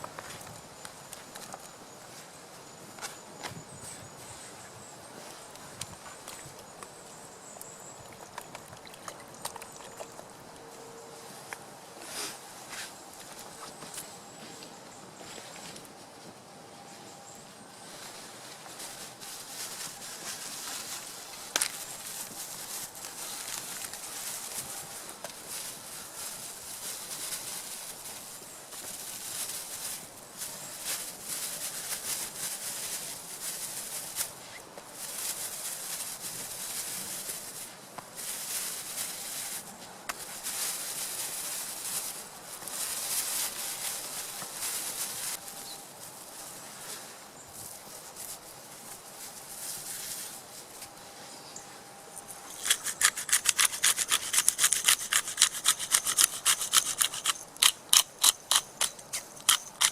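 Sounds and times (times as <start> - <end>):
rasping scrapes: 52.6 - 57.4
hand saw cutting wood: 52.6 - 58.7.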